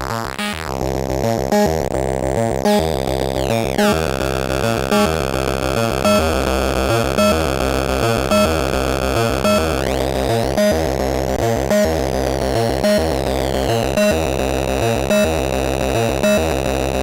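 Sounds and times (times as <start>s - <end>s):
distorted synthesizer pattern: 2.6s - 10.8s.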